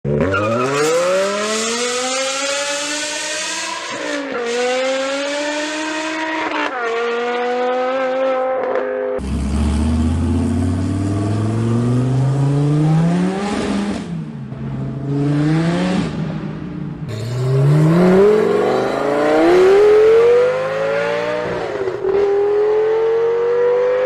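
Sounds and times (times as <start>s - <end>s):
car accelerating with upshifts: 0.1s - 24.0s
lower-pitched engine revving: 9.2s - 14.1s, 17.1s - 24.0s.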